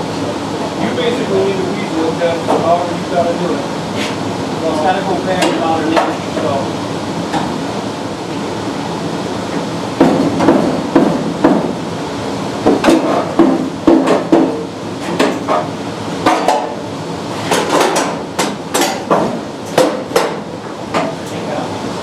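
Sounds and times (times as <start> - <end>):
hammer on sheet metal: 12.7 - 16.8, 17.5 - 21.2.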